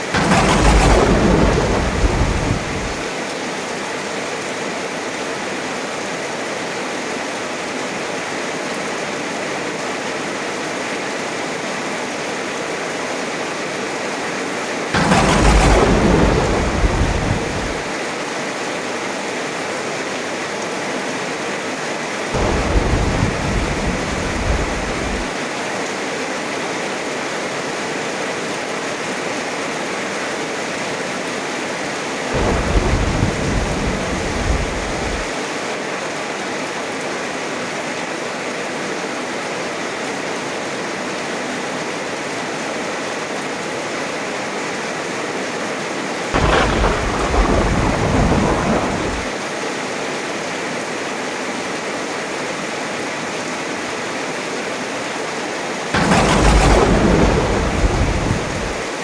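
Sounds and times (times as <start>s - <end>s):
loud thunderclap: 0.0s - 3.1s, 15.0s - 18.0s, 22.4s - 25.4s, 32.4s - 35.4s, 46.4s - 49.4s, 56.0s - 59.0s
thunder rumbling: 0.0s - 3.1s, 15.0s - 18.0s, 22.4s - 25.4s, 32.4s - 35.4s, 46.4s - 49.4s, 56.0s - 59.0s
heavy rain falling: 0.0s - 6.7s, 14.6s - 18.6s, 22.2s - 26.2s, 31.2s - 37.5s, 44.8s - 49.5s, 54.1s - 59.0s.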